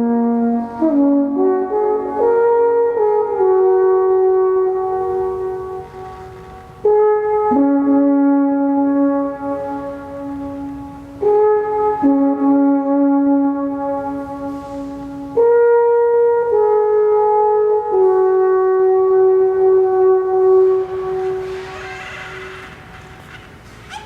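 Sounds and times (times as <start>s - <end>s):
brass horn playing slow tune: 0.0s - 21.8s.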